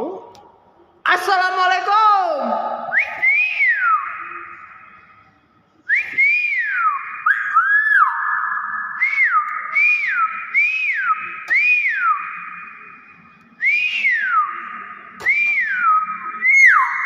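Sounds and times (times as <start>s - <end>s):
myna whistling: 2.9s - 5.0s, 5.9s - 13.0s, 13.6s - 17.0s.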